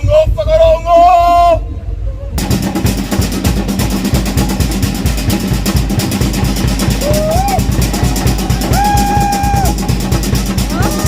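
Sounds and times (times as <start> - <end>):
music with fast driving drumming: 2.4 - 11.0.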